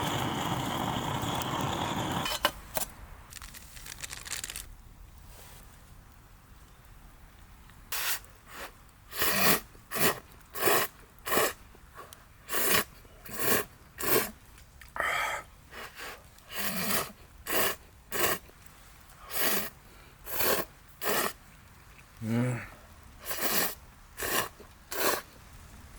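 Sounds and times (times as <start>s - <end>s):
person slurping noodles: 8.6s - 11.6s, 12.5s - 14.4s, 15.8s - 18.5s, 19.2s - 21.4s, 22.2s - 25.3s.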